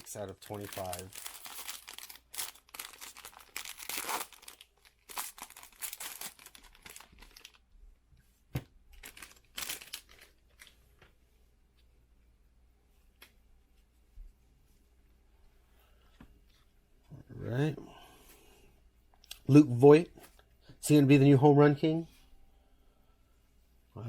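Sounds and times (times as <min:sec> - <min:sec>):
trading cards rustling: 0:00.0 - 0:07.6, 0:09.0 - 0:10.8
plastic packaging crinkling: 0:00.0 - 0:07.7, 0:08.9 - 0:10.8.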